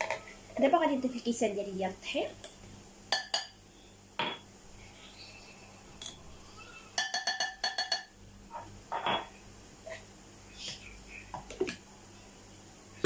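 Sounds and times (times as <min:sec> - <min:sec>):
drinking glass clinking: 0:07.0 - 0:08.2.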